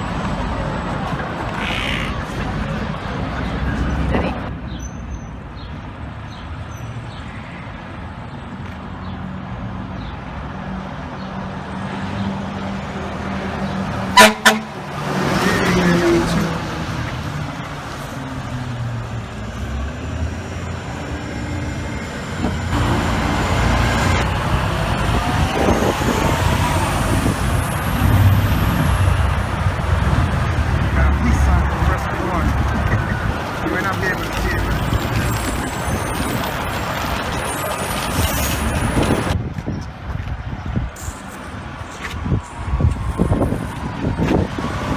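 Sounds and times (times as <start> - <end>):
city traffic: 0.0 - 44.9
heavy truck engine passing: 11.4 - 39.4
fire truck air horn toots: 14.2 - 14.8.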